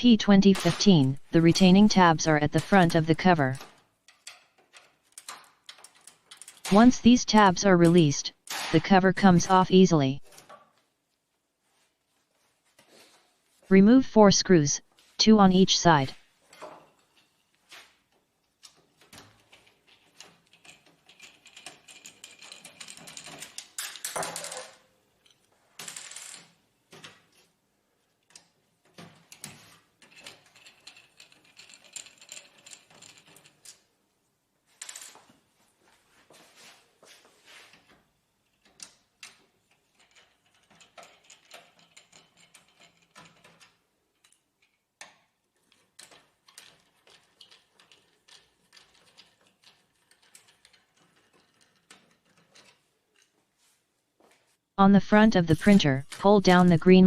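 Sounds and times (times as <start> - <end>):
clicks scrapes and rattles: 38.5 - 53.4.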